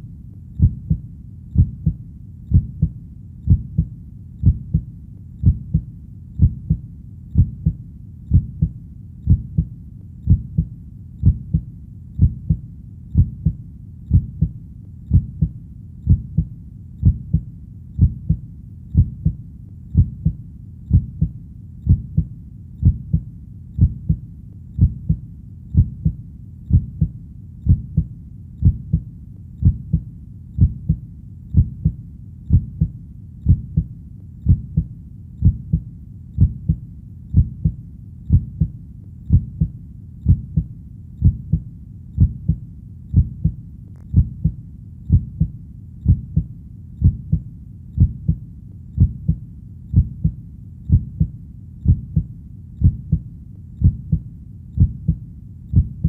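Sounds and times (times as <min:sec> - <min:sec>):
heartbeat lub-dub thumps: 0:00.0 - 0:56.0.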